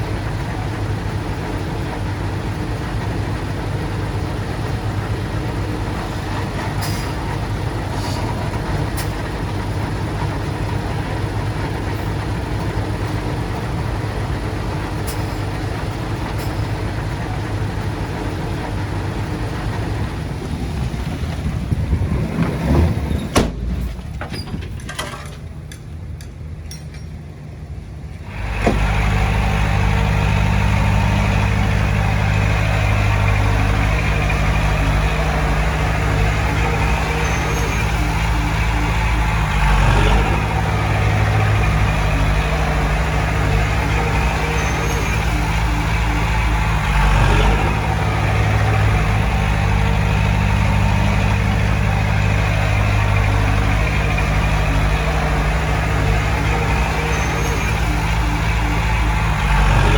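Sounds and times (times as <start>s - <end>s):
heavy machinery diesel engine: 0.0s - 59.9s
loud engine drone: 27.5s - 59.9s.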